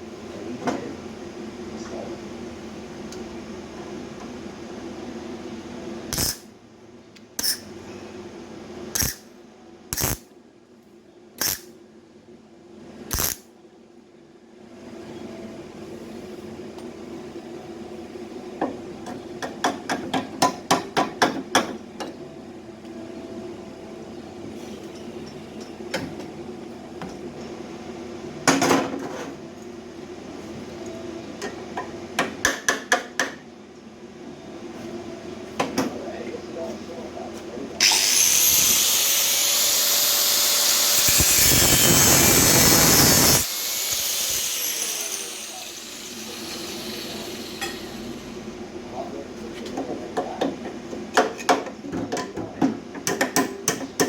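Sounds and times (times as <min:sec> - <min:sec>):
steady low hum: 0:33.5 - 0:51.1.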